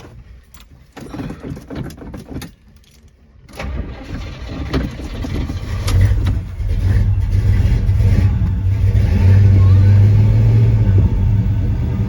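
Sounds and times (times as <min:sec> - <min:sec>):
car engine starting: 0:03.5 - 0:12.0.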